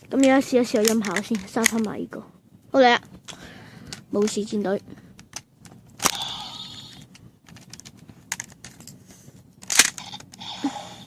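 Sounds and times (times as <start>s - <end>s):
plastic toy clicks: 0.2s - 1.9s, 9.6s - 10.5s.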